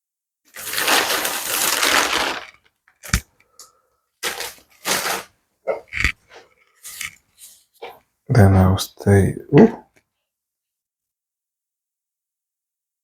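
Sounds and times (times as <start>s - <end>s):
dry granules being poured: 0.5s - 2.6s.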